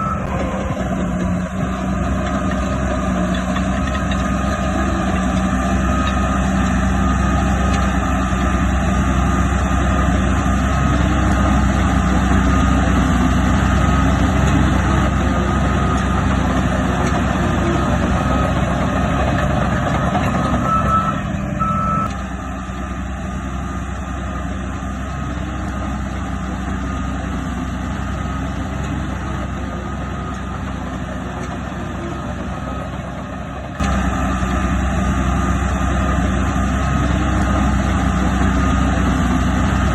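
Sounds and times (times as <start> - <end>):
reversing alarm beeping: 0.0 - 2.0, 4.4 - 22.2, 26.7 - 34.5
heavy diesel machinery running: 0.0 - 39.9.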